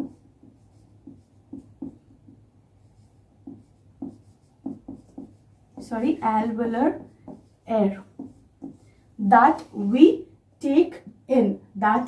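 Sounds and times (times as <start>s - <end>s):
pen strokes of handwriting: 0.0s - 2.0s, 2.8s - 6.0s.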